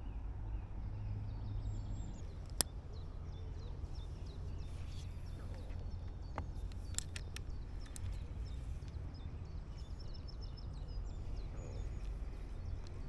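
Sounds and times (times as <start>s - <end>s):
small birds chirping: 1.0s - 13.0s
sharp clicks: 6.4s - 8.2s.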